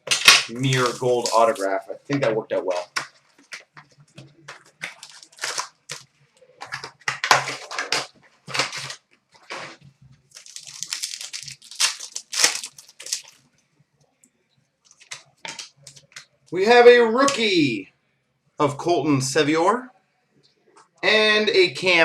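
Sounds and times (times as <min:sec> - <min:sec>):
card pack wrappers crinkling: 0:00.0 - 0:01.8, 0:02.7 - 0:06.0, 0:06.6 - 0:13.4, 0:14.9 - 0:16.2.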